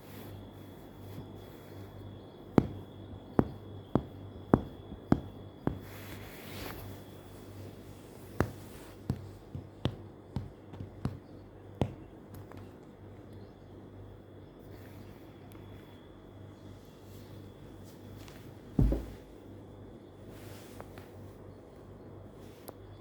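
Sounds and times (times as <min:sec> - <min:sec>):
faint low hum: 0:00.0 - 0:23.0
sharp taps: 0:02.6 - 0:05.9, 0:08.3 - 0:12.7.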